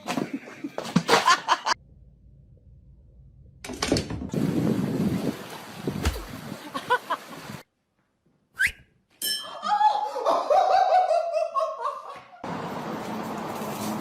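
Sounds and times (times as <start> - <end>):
laughter with falling notes: 9.5 - 12.4.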